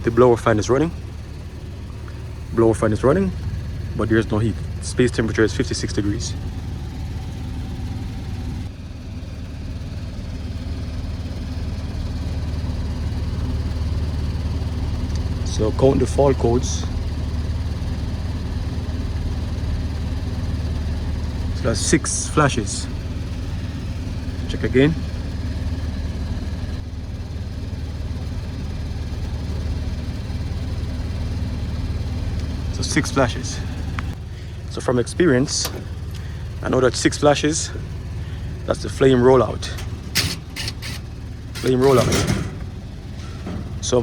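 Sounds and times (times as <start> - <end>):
furnace blower fan humming: 28.5 - 44.0.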